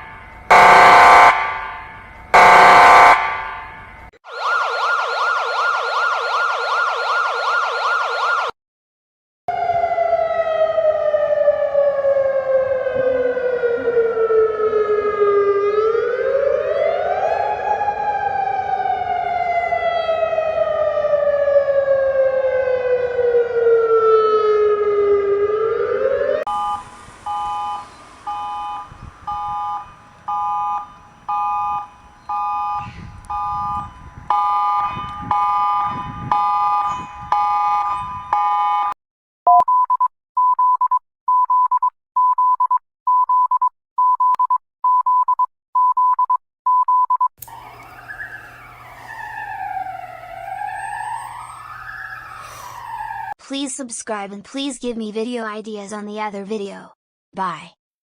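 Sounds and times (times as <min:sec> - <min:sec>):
falling siren tone: 0:00.0 - 0:08.6, 0:09.5 - 0:39.0, 0:47.4 - 0:53.4
chord of beeps: 0:26.5 - 0:38.9.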